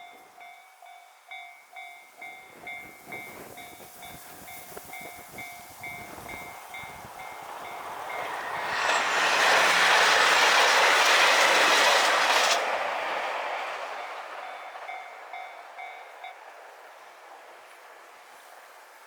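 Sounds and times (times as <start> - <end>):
level crossing warning bell: 0.0 - 8.7
diesel train passing: 0.1 - 19.0.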